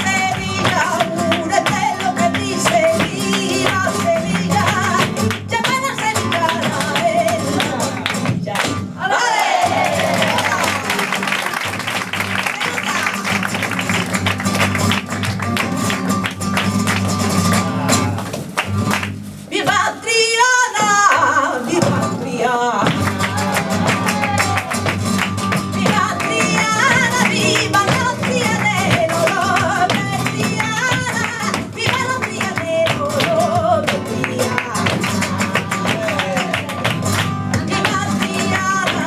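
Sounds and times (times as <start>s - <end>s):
solo singer: 0.0s - 11.3s, 17.1s - 18.6s, 19.5s - 39.0s
flamenco guitar strumming: 0.0s - 39.0s.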